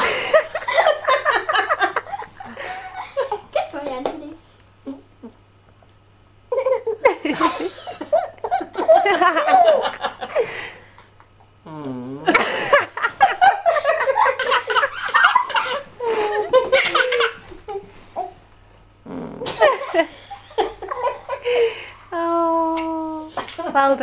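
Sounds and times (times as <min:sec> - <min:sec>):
people laughing and giggling: 0:00.0 - 0:03.6, 0:06.5 - 0:10.7, 0:12.3 - 0:17.9, 0:19.5 - 0:21.9.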